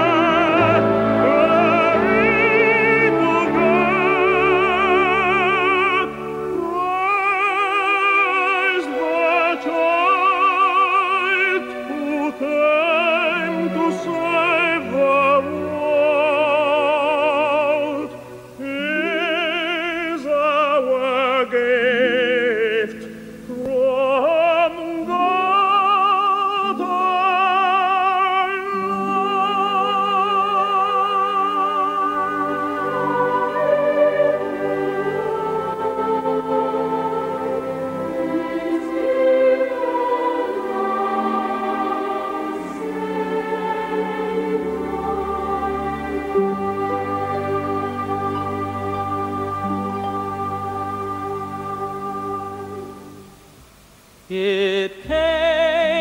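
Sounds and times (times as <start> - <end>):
operatic voice singing: 0.0 - 53.0, 54.3 - 56.0
sustained accompaniment: 0.0 - 54.3
singer breathing: 23.0 - 23.5.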